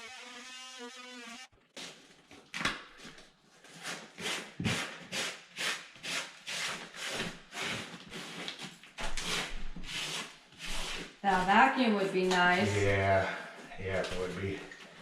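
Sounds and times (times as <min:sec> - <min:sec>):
hand saw cutting wood: 0:03.7 - 0:08.6, 0:09.2 - 0:11.6.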